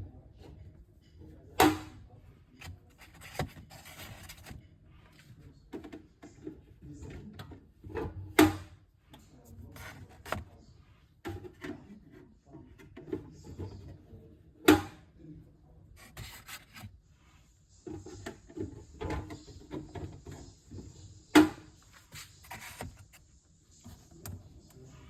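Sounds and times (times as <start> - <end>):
rubbing and rustling: 2.1 - 8.1, 9.1 - 14.3, 15.9 - 25.0.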